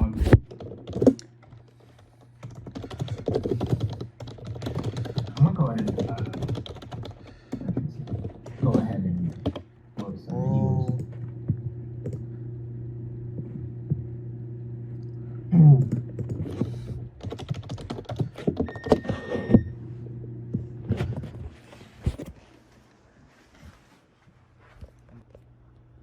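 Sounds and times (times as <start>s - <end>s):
low electrical hum: 0.0s - 26.0s
keyboard and mouse clicking: 0.3s - 10.1s, 12.0s - 12.2s, 15.8s - 19.0s.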